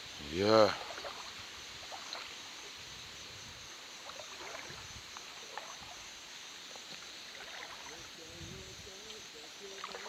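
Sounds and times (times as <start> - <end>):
faint river water flowing: 0.0 - 10.0
small clicks and sloshes: 6.9 - 8.0.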